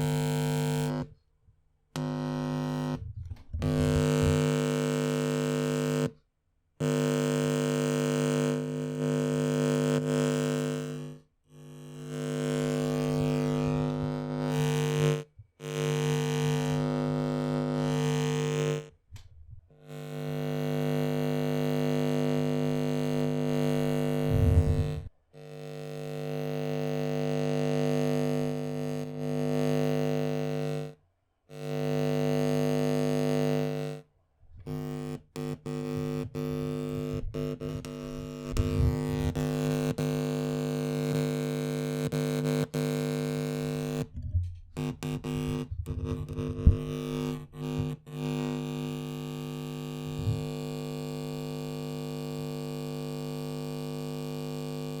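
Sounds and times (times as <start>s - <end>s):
loudspeaker buzzing: 12.0s - 16.9s, 23.6s - 25.1s.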